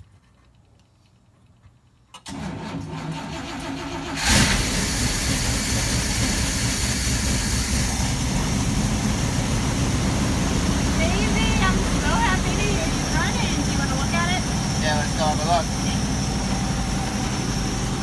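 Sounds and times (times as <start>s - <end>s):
starter motor cranking: 2.2s - 18.0s
engine running steadily: 3.4s - 18.0s.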